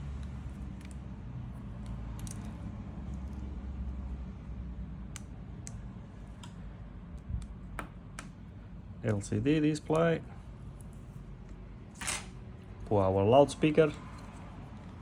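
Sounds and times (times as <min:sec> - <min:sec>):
low steady hum: 0:00.0 - 0:15.0
connectors clicking into place: 0:01.8 - 0:03.4.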